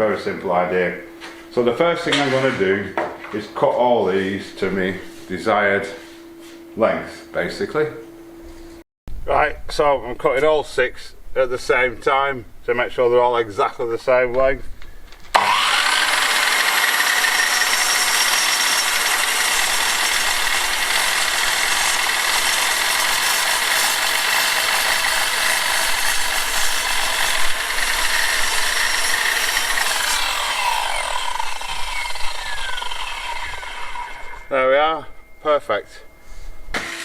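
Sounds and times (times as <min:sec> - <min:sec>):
power saw cutting boards: 0:15.3 - 0:34.6, 0:36.7 - 0:37.0
saw motor winding down: 0:15.3 - 0:34.6, 0:36.8 - 0:37.0.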